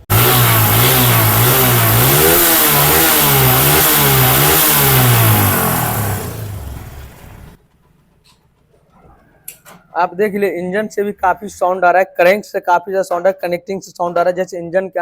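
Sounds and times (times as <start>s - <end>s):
motorcycle engine revving: 0.0s - 7.6s
heavy engine rattling: 0.0s - 8.9s.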